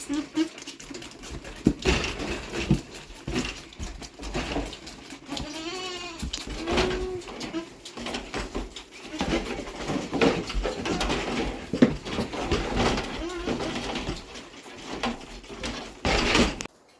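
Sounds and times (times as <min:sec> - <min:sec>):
goats bleating: 0:00.0 - 0:00.8, 0:05.2 - 0:08.0, 0:13.0 - 0:13.8
knocks and rustling: 0:00.0 - 0:16.9.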